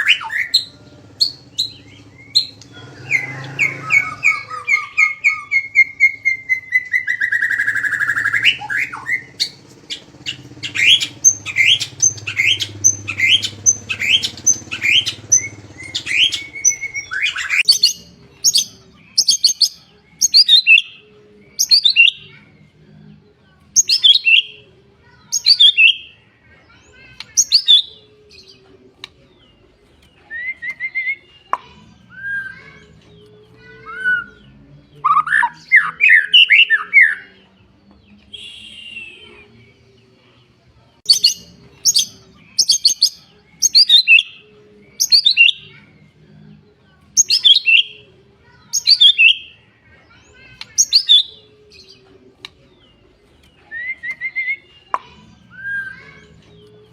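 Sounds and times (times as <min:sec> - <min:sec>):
bird warbling: 0:00.0 - 0:17.9
songbird sharp descending calls: 0:00.0 - 0:18.6, 0:38.3 - 0:39.4.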